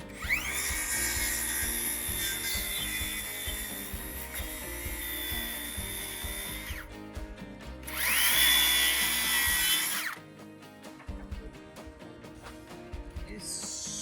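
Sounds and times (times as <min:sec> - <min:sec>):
power tool motor whining: 0:00.1 - 0:06.9, 0:07.8 - 0:10.2.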